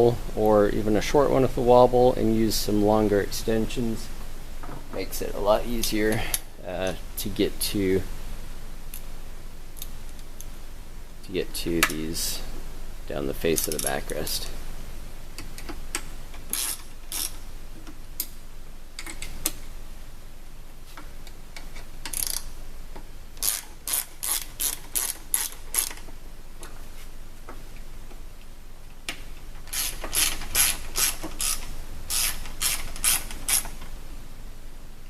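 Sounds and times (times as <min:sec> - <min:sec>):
hand ratchet clicking: 0:15.5 - 0:17.4, 0:21.6 - 0:22.5, 0:23.4 - 0:26.1, 0:29.6 - 0:33.8.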